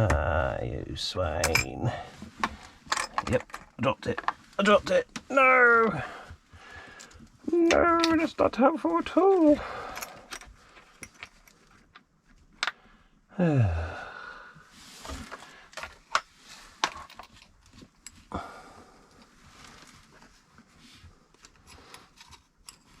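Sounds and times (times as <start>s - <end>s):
man groaning: 0.0s - 0.8s, 13.3s - 14.2s
breathing: 6.0s - 7.3s, 9.6s - 11.3s, 12.6s - 16.8s, 18.2s - 19.9s, 21.0s - 22.2s.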